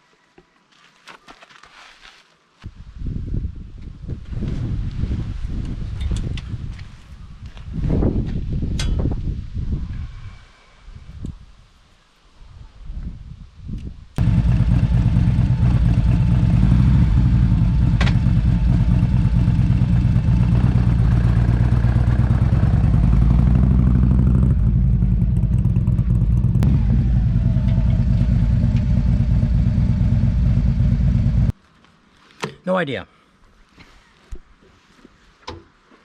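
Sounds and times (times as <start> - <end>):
motorcycle engine idling: 14.2 - 31.5.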